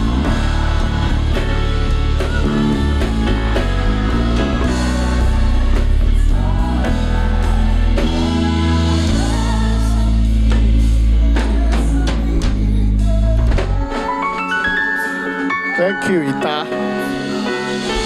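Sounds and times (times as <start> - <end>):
live band playing: 0.0 - 18.0
person singing: 0.0 - 18.0.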